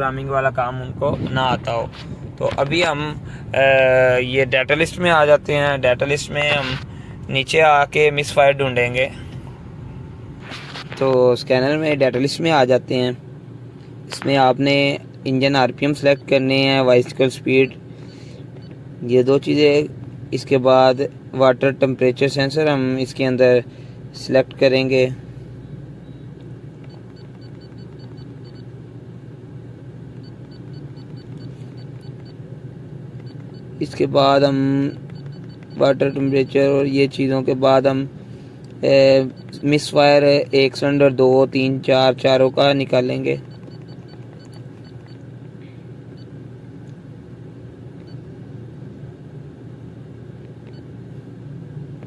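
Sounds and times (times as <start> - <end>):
low car cabin rumble: 0.0 - 52.0
rapid high-pitched beeps: 26.8 - 28.7, 30.2 - 32.4, 33.2 - 34.0, 34.8 - 36.7, 39.2 - 39.7, 43.1 - 45.2.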